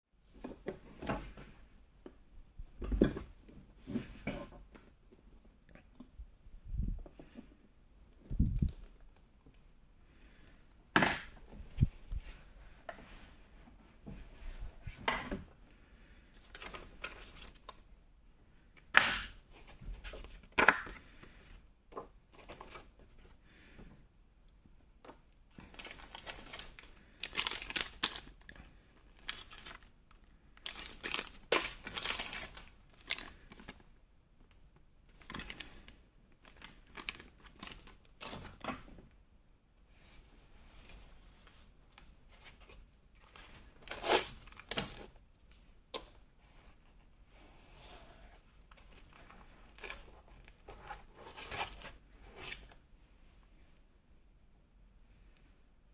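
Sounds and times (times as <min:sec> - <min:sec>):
packaging rustling and crinkling: 0:25.6 - 0:33.9, 0:35.1 - 0:38.9, 0:48.1 - 0:52.8.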